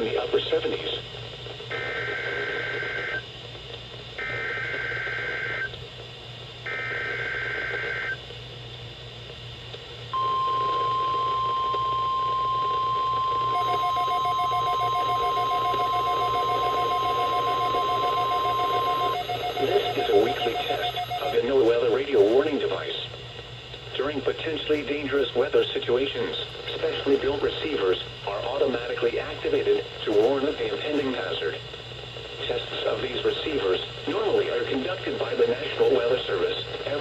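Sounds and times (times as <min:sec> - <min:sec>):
steady alarm tone: 0:10.1 - 0:21.5
rapidly pulsing beep: 0:10.2 - 0:21.5
warbling digital header tones: 0:13.5 - 0:21.5.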